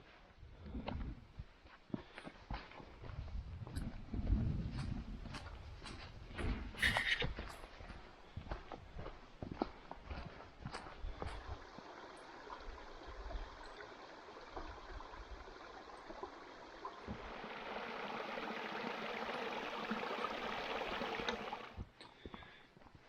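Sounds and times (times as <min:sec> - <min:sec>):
stream running water: 0:10.2 - 0:21.9.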